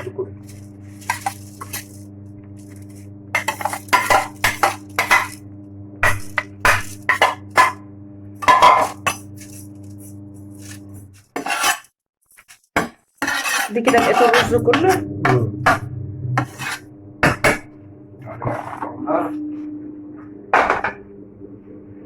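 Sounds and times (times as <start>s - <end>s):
spoon scraping cooking pot: 0.0s - 5.4s, 6.0s - 7.8s, 8.4s - 17.6s
steady low hum: 0.0s - 11.2s, 13.7s - 22.0s.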